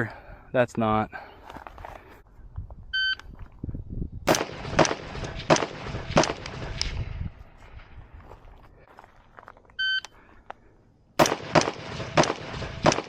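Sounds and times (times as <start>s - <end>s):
gunshots: 4.3s - 7.2s, 11.2s - 13.0s.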